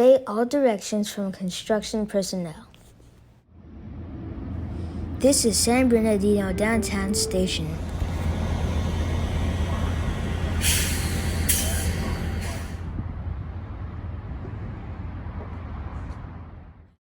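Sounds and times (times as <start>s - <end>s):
diesel vehicle idling: 3.6s - 14.4s
air brake hiss: 7.4s - 12.9s.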